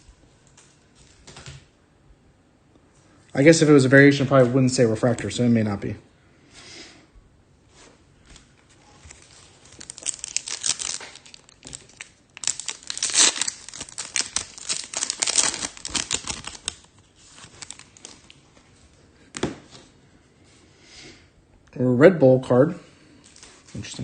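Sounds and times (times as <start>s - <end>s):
foil wrapper crinkling: 8.9s - 18.4s.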